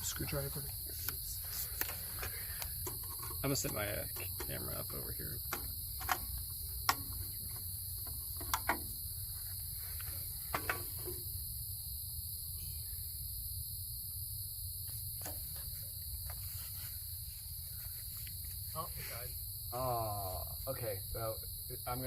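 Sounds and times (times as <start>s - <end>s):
crickets trilling: 0.0s - 22.0s
sharp clicks: 5.4s - 7.2s.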